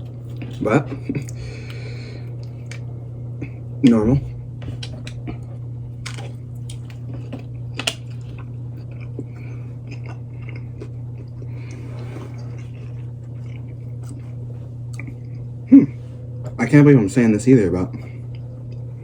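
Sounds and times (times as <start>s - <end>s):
person chewing food: 0.0s - 3.6s, 4.6s - 15.5s
low hum: 0.0s - 19.0s.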